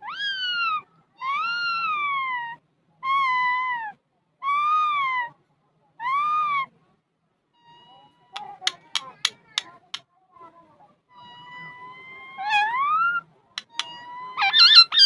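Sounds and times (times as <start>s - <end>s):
parrot calling: 0.0s - 5.3s, 11.7s - 15.0s.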